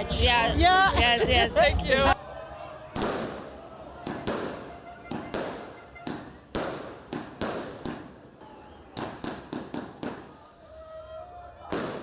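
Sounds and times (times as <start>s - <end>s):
fireworks bangs echoing: 2.9s - 8.3s, 8.9s - 10.5s, 11.6s - 12.0s.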